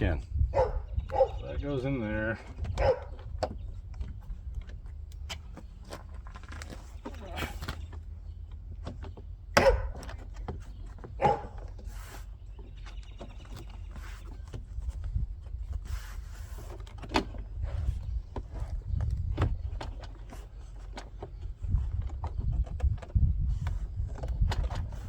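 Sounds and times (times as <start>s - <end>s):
plastic parts clicking and rattling: 2.4s - 11.9s, 16.6s - 25.0s.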